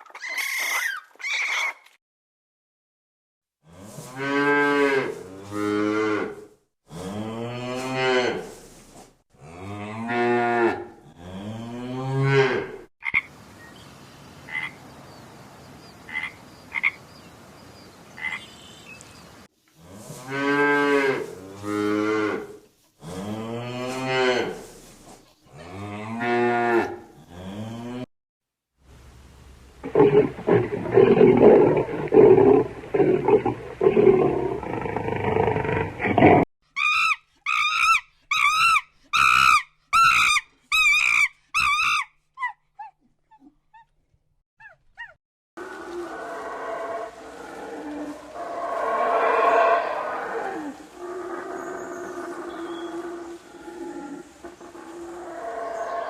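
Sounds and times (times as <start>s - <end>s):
cows mooing: 29.8s - 36.4s, 45.9s - 54.2s.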